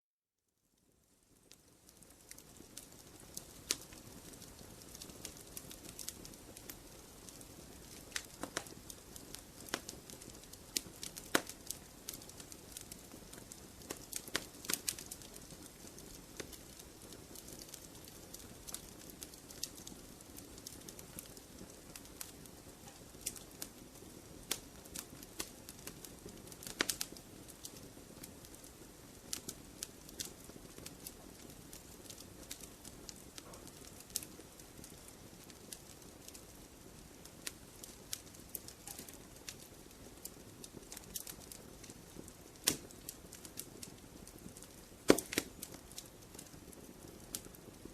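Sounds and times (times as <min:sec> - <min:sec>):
campfire crackling and popping: 0:00.8 - 0:47.9.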